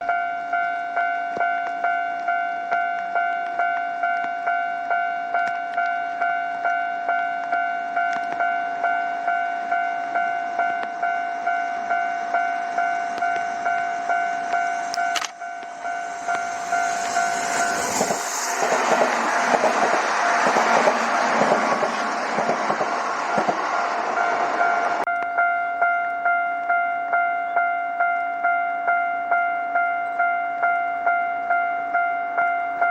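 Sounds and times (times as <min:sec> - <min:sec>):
level-crossing bell ringing: 0:00.0 - 0:21.3, 0:23.0 - 0:32.9
electric train passing: 0:00.1 - 0:32.9.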